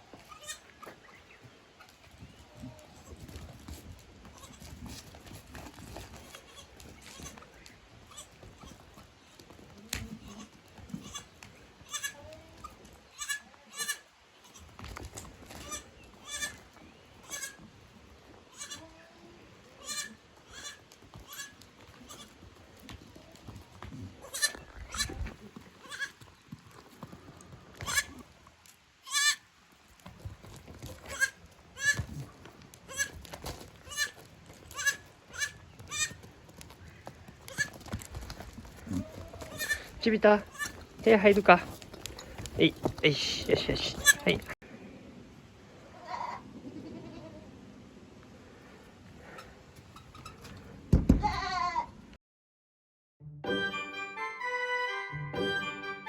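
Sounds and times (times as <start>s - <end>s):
goats bleating: 0.2s - 0.7s, 8.0s - 8.9s, 9.8s - 14.7s, 15.5s - 16.6s, 17.2s - 17.6s, 18.5s - 22.4s, 24.2s - 26.2s, 27.8s - 28.3s, 29.0s - 29.4s, 30.9s - 32.2s, 32.9s - 33.2s, 33.8s - 36.2s, 37.5s - 37.8s, 38.7s - 41.6s, 42.2s - 44.6s, 46.1s - 47.4s.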